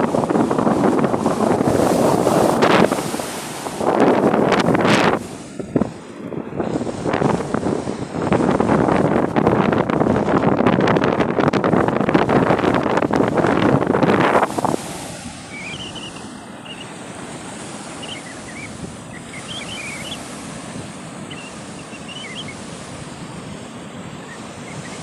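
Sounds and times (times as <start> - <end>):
sea waves washing on shore: 0.0 - 25.0
wind on microphone: 0.0 - 25.0
faint high chirps: 15.5 - 16.9, 18.0 - 20.2, 21.3 - 22.6.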